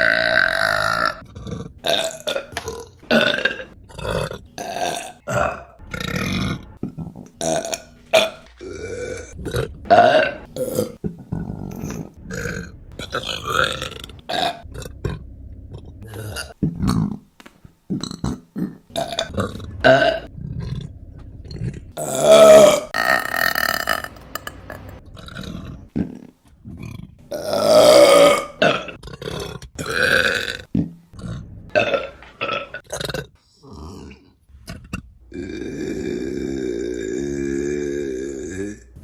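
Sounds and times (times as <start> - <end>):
women burping: 35.3 - 39.0.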